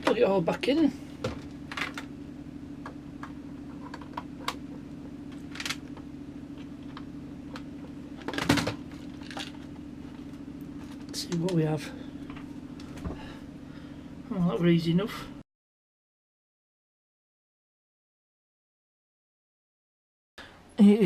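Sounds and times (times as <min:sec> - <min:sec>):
steady low hum: 0:00.0 - 0:15.4.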